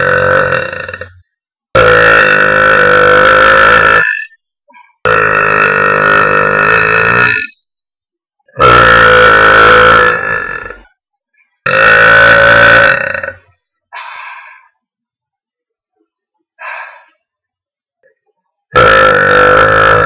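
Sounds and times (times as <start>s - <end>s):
girl burping loudly: 0.0s - 1.2s, 1.8s - 4.4s, 5.0s - 7.6s, 8.5s - 11.0s, 11.6s - 13.5s, 18.7s - 20.0s.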